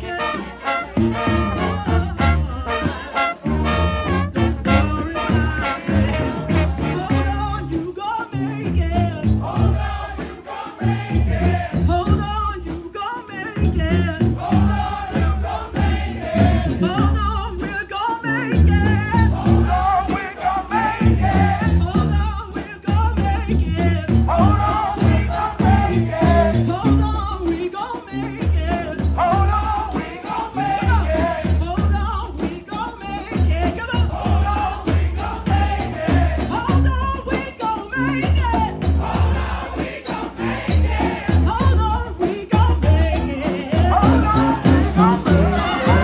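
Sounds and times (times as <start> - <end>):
brass band playing: 0.0 - 12.4, 13.7 - 17.7, 18.3 - 22.3, 23.5 - 27.5, 34.0 - 37.2, 38.0 - 46.0
steady drum beat: 0.0 - 46.0
voices singing along: 0.0 - 46.0.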